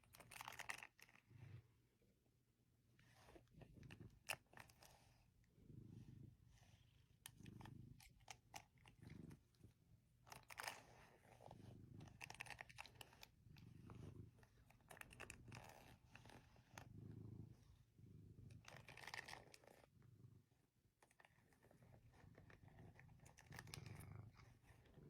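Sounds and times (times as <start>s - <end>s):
cat purring: 0.0s - 2.2s, 2.8s - 25.0s.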